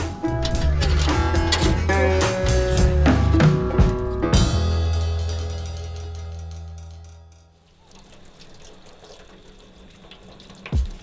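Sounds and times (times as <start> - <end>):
drum and cymbal hit: 0.0 - 6.9
held chord and bass note: 0.3 - 7.4.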